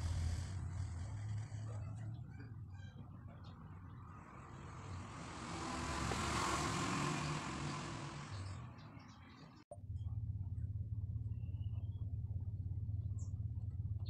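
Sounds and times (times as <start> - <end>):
vehicle passing by: 0.0 - 9.6.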